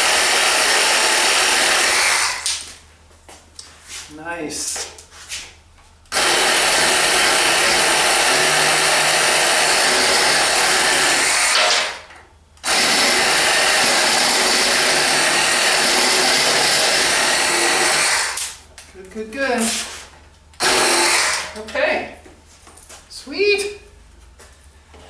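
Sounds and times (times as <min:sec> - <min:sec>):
reciprocating saw cutting wood: 0:00.0 - 0:02.6, 0:06.1 - 0:18.6, 0:20.6 - 0:21.6.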